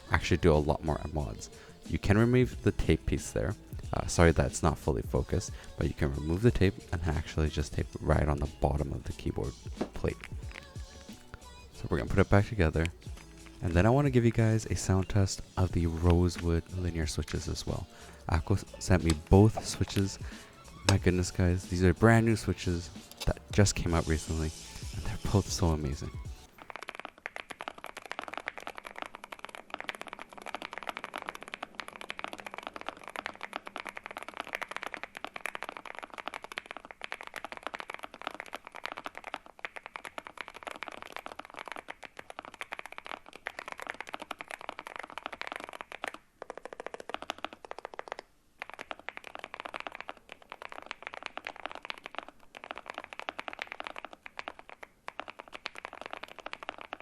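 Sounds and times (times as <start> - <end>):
fast mechanical keyboard typing: 27.4 - 57.0.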